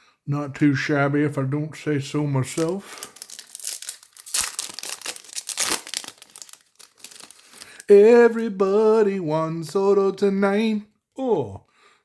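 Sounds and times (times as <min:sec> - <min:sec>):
foil wrapper crinkling and tearing: 0:02.5 - 0:07.9
man singing: 0:07.8 - 0:11.6.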